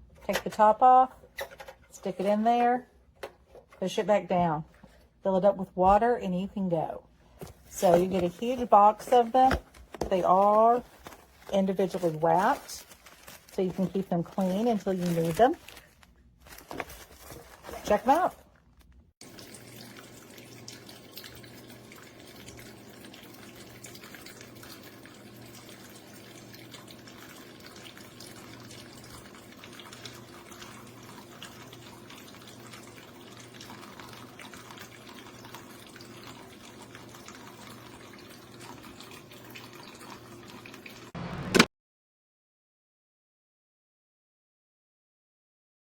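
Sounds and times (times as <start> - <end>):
water trickling and dripping: 19.2 - 41.2.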